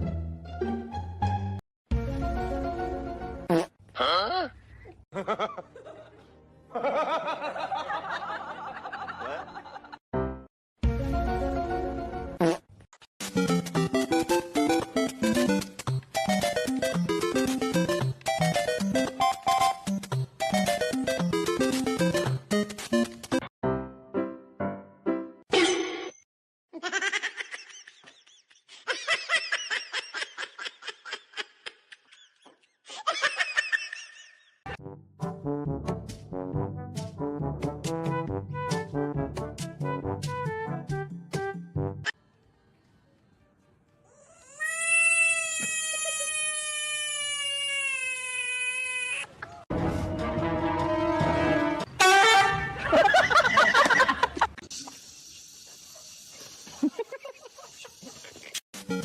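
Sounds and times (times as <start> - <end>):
background music: 0.0 - 3.6, 5.2 - 12.4, 13.2 - 25.4, 34.7 - 42.6, 49.7 - 53.8, 58.8 - 59.0
many people laughing: 5.1 - 10.0, 52.6 - 54.6, 56.8 - 58.4
high-pitched laughter: 44.4 - 49.2, 52.6 - 54.6, 56.7 - 58.6.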